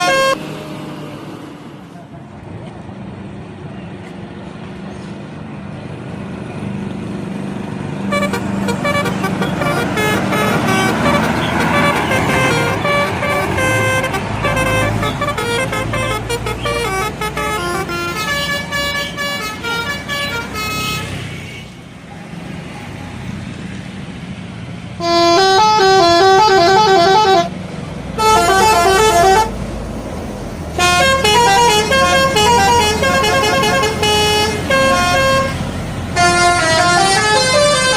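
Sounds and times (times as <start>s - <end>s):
bus multi-tone horn melody: 0.0s - 0.6s, 8.0s - 21.8s, 25.0s - 29.7s, 30.7s - 37.9s
bus engine running: 0.0s - 37.9s.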